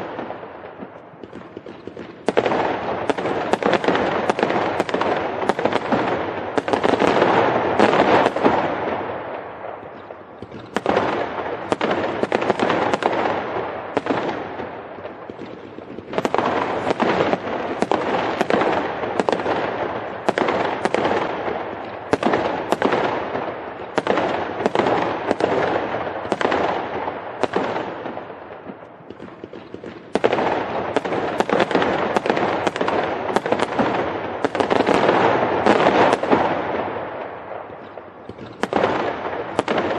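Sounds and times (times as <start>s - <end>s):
fireworks crackling: 0.0s - 39.9s.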